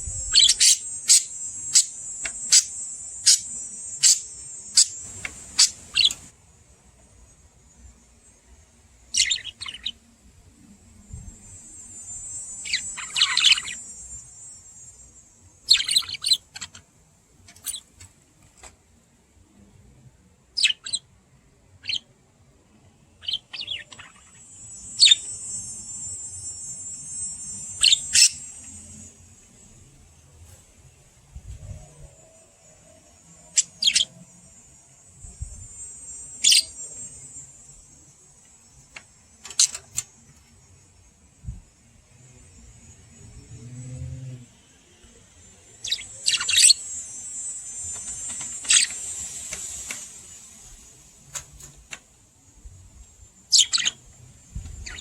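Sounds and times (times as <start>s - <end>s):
budgerigars chirping and chattering: 0.3s - 6.3s, 9.1s - 10.0s, 12.6s - 13.9s, 15.7s - 16.8s, 27.8s - 28.5s, 33.6s - 34.1s, 36.4s - 36.7s, 45.8s - 46.8s, 48.0s - 49.0s, 53.5s - 54.0s, 54.8s - 55.0s.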